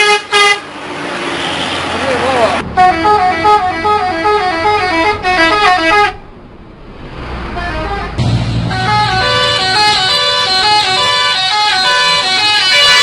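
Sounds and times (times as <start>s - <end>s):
bus horn playing a tune: 0.0s - 0.7s, 2.8s - 6.2s, 7.5s - 13.0s.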